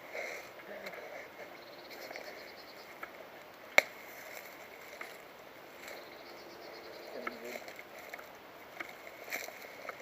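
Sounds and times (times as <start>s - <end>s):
sharp crack: 3.7s - 4.0s.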